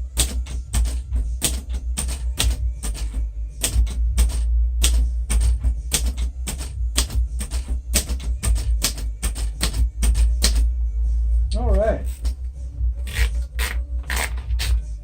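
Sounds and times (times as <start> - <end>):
manual typewriter keystrokes: 0.2 - 10.6.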